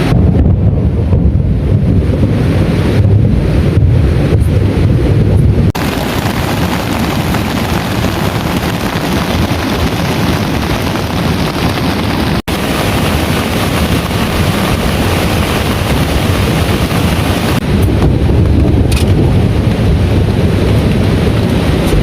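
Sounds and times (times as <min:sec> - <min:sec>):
deep rumble: 0:00.0 - 0:22.0
heavy rain pouring: 0:05.6 - 0:22.0.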